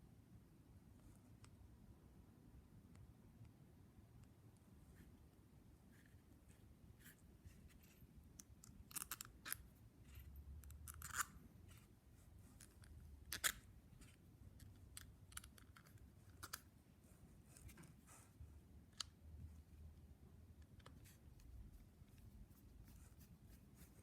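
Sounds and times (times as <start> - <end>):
faint low hum: 0.0 - 24.0
clicks of small parts handled: 8.4 - 11.3.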